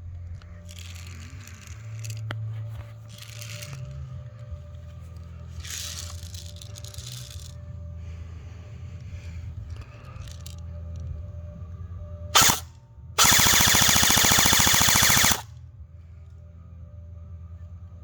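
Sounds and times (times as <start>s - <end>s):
airsoft rifle firing bursts: 12.4s - 15.4s.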